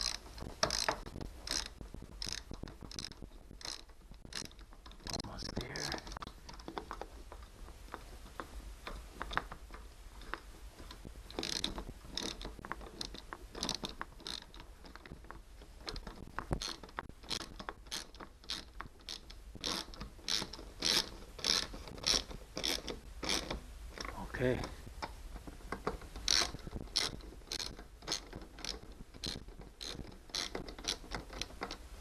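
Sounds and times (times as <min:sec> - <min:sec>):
ratchet wrench clicking: 0:00.0 - 0:04.6, 0:11.3 - 0:15.1, 0:16.6 - 0:23.6, 0:26.3 - 0:31.8.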